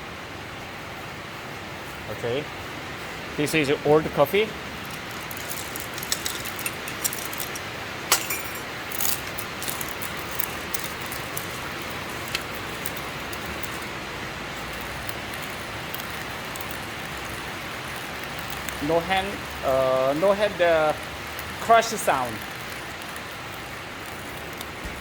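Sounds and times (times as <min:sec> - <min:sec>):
coffee grinder grinding: 0:04.5 - 0:25.0
sharp cracks of beans: 0:04.8 - 0:07.8, 0:08.6 - 0:25.0.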